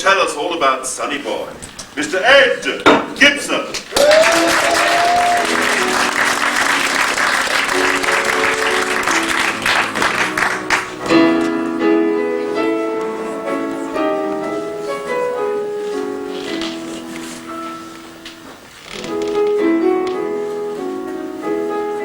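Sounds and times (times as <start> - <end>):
audience applauding: 3.8 - 11.4
piano playing: 4.0 - 22.0.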